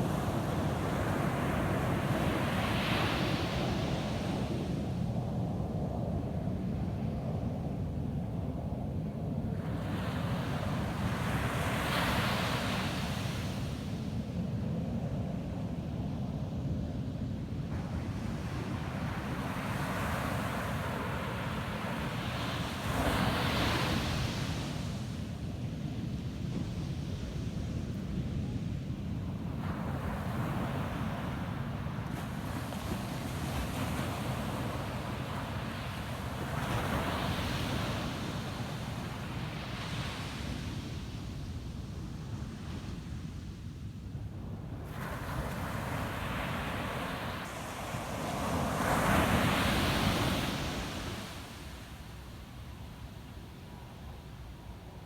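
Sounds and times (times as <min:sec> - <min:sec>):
ocean waves breaking on beach: 0:29.5 - 0:41.3, 0:44.6 - 0:55.0.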